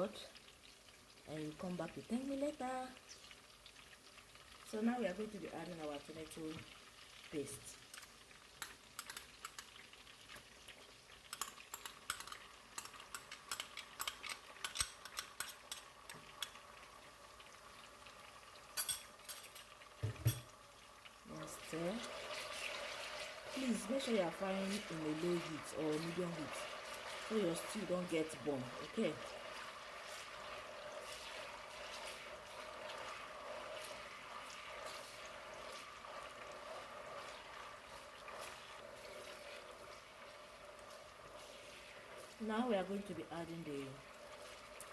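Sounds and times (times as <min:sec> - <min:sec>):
oil sizzling: 0:00.0 - 0:44.9
spoon stirring and scraping pot: 0:07.8 - 0:16.6, 0:18.8 - 0:20.5, 0:21.6 - 0:44.9
spoon clicking against pot: 0:08.6 - 0:09.7, 0:11.3 - 0:16.6.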